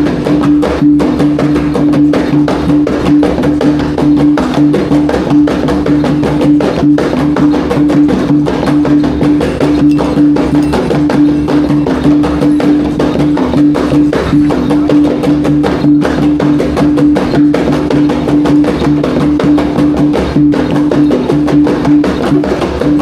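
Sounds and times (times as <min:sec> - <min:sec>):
drum and gong ensemble: 0:00.0 - 0:23.0
repeating pitched tone: 0:09.6 - 0:12.9.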